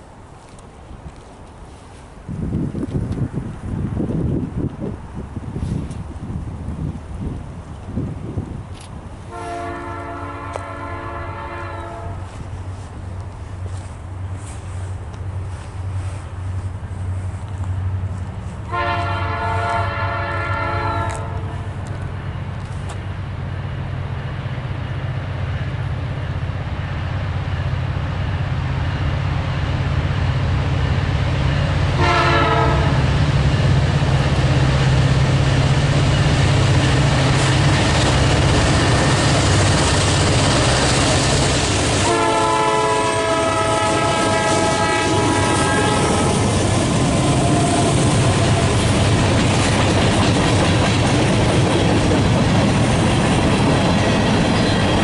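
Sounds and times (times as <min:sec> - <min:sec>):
low engine rumble: 0:00.0 - 0:55.0
locomotive air horn blasts: 0:09.3 - 0:12.4, 0:18.7 - 0:21.8, 0:32.0 - 0:33.0, 0:42.0 - 0:48.8
train wheels clattering on rails: 0:20.9 - 0:55.0.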